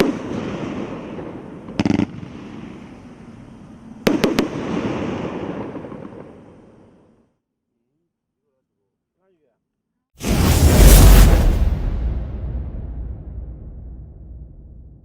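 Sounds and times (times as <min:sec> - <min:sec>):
hiss of bursting fireworks shells: 0:10.2 - 0:12.2
sharp firework bangs: 0:10.2 - 0:15.0.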